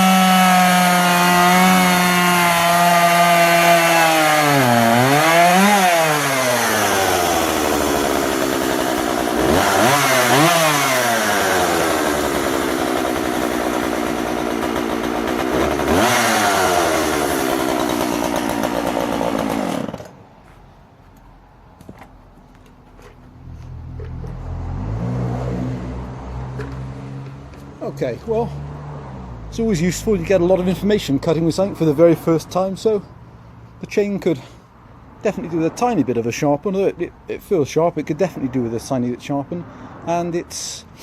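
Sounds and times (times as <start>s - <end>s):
chainsaw cutting wood: 0.0s - 20.2s.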